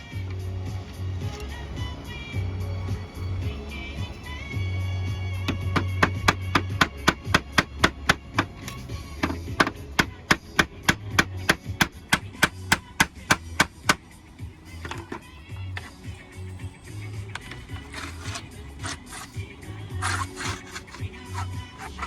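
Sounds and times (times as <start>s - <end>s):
faint radio music: 0.0s - 22.0s
hammer tapping a nail: 9.6s - 14.0s.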